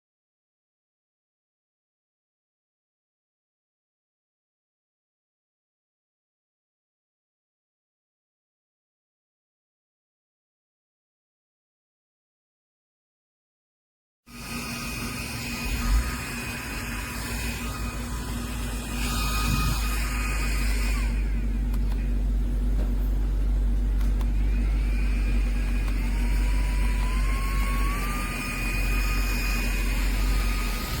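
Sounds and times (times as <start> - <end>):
motor running: 14.3 - 31.0
rising whine: 14.3 - 31.0.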